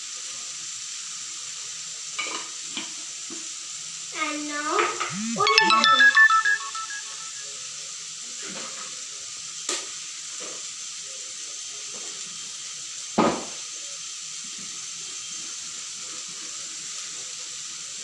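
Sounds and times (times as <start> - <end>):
vegetables sizzling in a pan: 0.0 - 4.8, 9.0 - 18.0.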